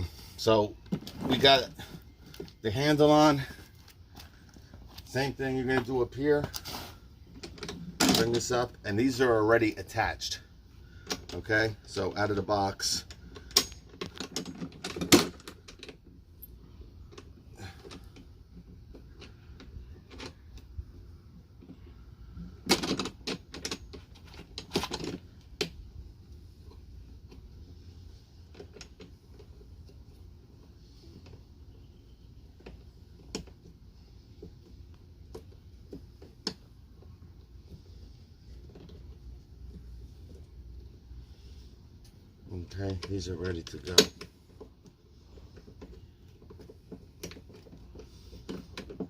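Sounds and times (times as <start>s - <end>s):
clicks and knocks of parts: 13.1s - 16.1s, 22.6s - 25.8s, 42.8s - 49.0s.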